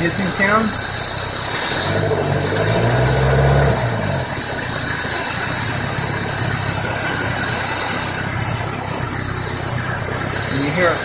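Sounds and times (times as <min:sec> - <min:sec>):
car engine idling: 0:00.0 - 0:11.0
deep hum: 0:01.2 - 0:10.5.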